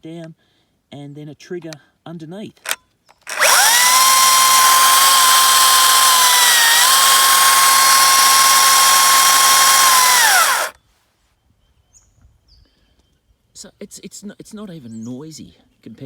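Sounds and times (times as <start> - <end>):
electric chainsaw whining: 3.2 - 10.8.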